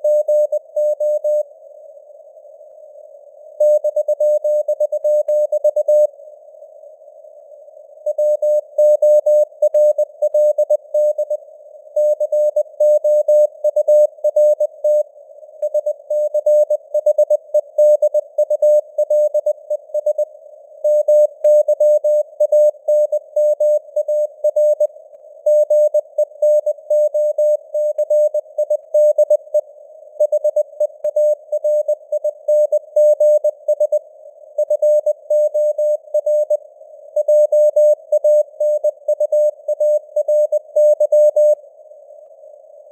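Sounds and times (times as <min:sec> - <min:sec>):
faint radio noise hiss: 0:01.4 - 0:03.6, 0:41.6 - 0:42.9.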